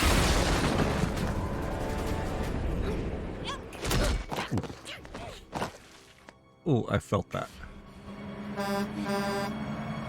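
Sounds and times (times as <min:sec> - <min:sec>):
dramatic music: 0:00.6 - 0:03.8, 0:06.4 - 0:10.0.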